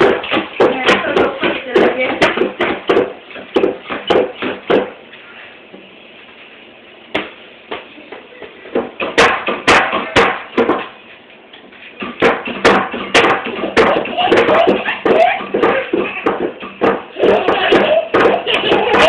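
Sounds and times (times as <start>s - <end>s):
sharp knocks: 0.0s - 5.0s, 8.7s - 11.0s, 12.0s - 19.0s.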